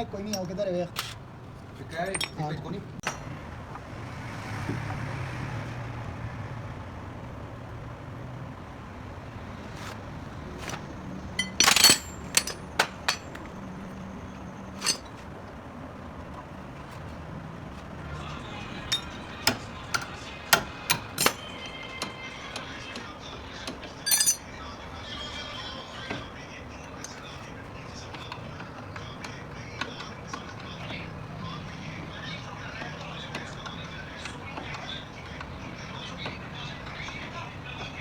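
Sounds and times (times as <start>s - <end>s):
hand tools clinking on metal: 0.0s - 3.3s, 11.2s - 13.9s, 14.7s - 15.2s, 18.6s - 22.7s, 23.8s - 24.7s
metallic ring: 2.0s - 2.6s, 11.4s - 13.4s, 14.8s - 15.1s, 21.0s - 21.7s, 24.1s - 24.5s.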